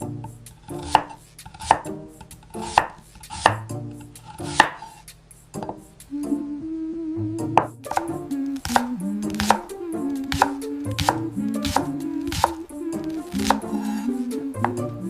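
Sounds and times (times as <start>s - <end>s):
knife chopping on cutting board: 0.8s - 2.0s, 2.6s - 3.7s, 4.3s - 5.0s, 7.9s - 15.0s.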